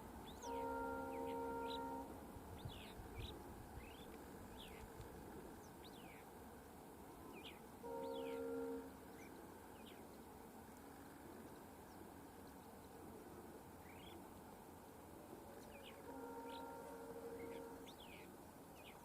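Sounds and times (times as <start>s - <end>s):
birds chirping: 0.2s - 4.9s, 5.6s - 10.3s, 15.6s - 19.0s
locomotive air horn blasts: 0.4s - 2.3s, 7.8s - 9.1s, 16.0s - 18.2s.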